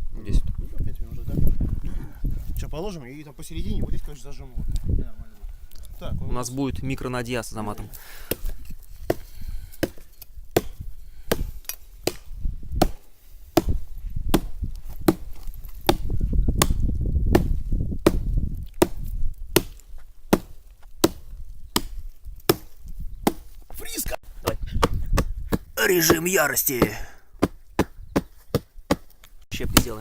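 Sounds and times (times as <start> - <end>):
wood chopping blows: 8.2 - 23.6, 24.4 - 30.0.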